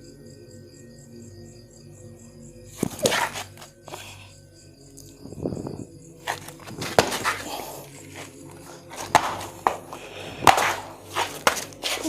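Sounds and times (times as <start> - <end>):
sharp knocks and scuffs: 2.8 - 3.7, 6.3 - 12.0.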